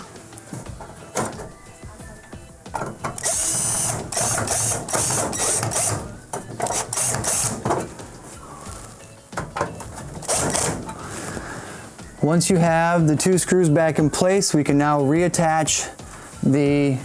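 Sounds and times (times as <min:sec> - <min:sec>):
power screwdriver whirring: 0:03.1 - 0:07.7, 0:10.2 - 0:10.9.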